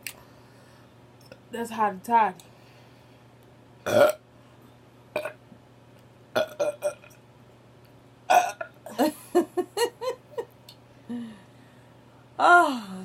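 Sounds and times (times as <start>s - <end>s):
person burping: 3.8s - 4.2s, 5.2s - 5.4s, 6.4s - 7.1s, 8.3s - 9.0s.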